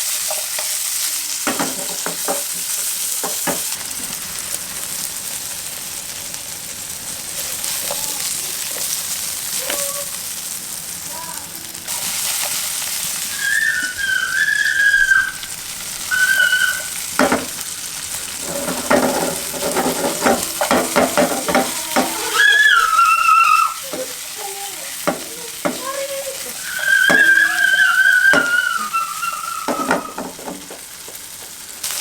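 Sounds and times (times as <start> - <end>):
steak sizzling in a pan: 0.0 - 32.0
utensils clicking and knocking: 1.4 - 4.1, 16.3 - 22.9, 23.9 - 31.5
high wavering whistle: 13.3 - 17.0, 22.2 - 23.8, 26.6 - 30.2.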